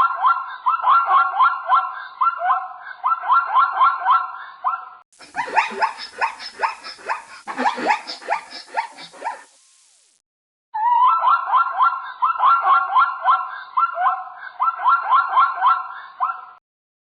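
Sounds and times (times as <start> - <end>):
yelping animal calls: 0.0 - 9.5, 10.8 - 16.6
chattering animal call: 5.2 - 9.5.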